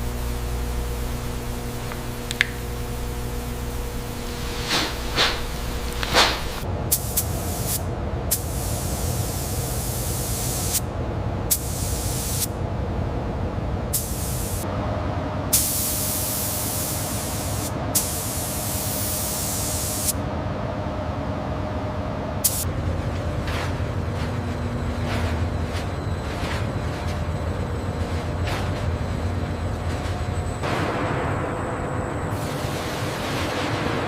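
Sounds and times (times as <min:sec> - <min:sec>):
spray gun hissing: 0:00.0 - 0:10.8, 0:11.5 - 0:12.5, 0:13.9 - 0:14.6, 0:15.5 - 0:20.2, 0:22.4 - 0:22.7
low machinery hum: 0:00.0 - 0:34.0.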